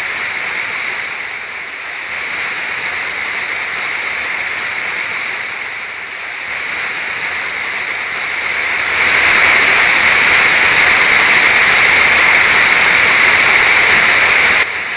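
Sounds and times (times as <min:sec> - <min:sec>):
waterfall rushing: 0:06.5 - 0:14.9.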